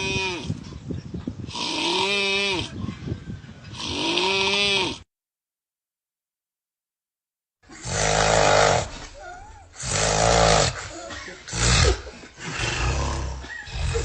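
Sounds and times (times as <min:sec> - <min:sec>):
person snoring loudly: 0:03.7 - 0:05.0, 0:07.7 - 0:08.9, 0:09.8 - 0:10.9, 0:11.5 - 0:14.0.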